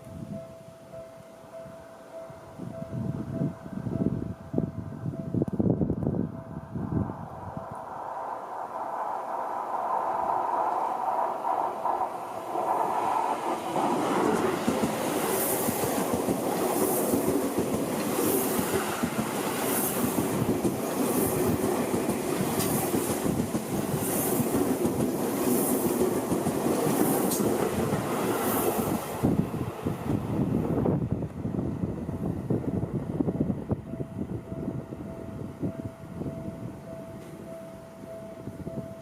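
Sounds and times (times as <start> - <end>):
level crossing warning bells: 0.3 - 5.4, 32.8 - 39.0
train wheels clattering over rail joints: 12.0 - 28.8.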